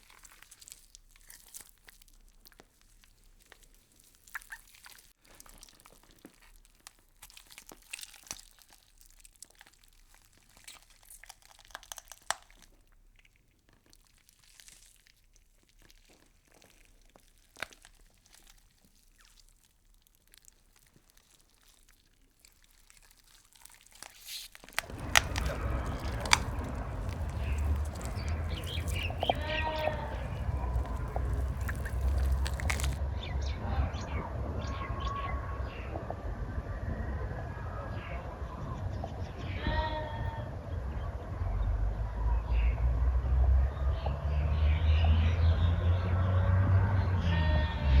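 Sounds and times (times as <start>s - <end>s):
insects chewing leaves: 0.0s - 33.0s
bird calls: 24.8s - 33.0s.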